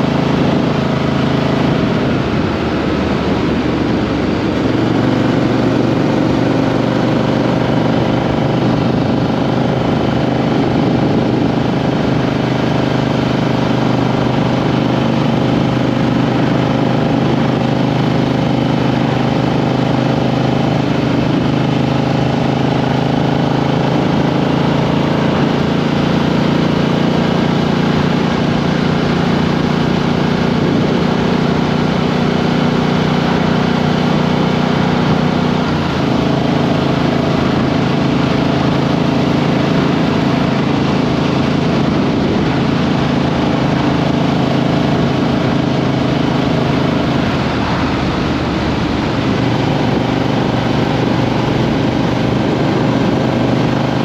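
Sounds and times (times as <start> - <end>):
motorcycle engine running: 0.0 - 54.0
road and wind noise: 0.0 - 54.0.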